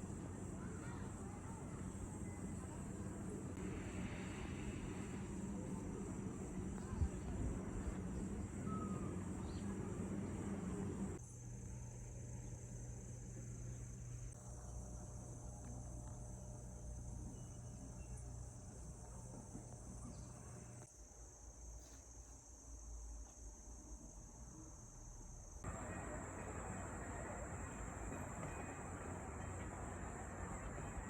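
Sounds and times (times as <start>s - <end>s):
crickets chirring: 0.0s - 31.0s
low background hum: 0.0s - 31.0s.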